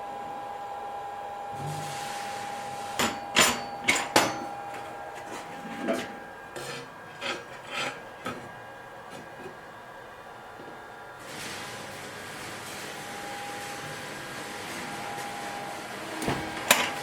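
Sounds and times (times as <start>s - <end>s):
faint steady hum: 0.0s - 17.0s
file scraping steel blade: 3.0s - 9.6s.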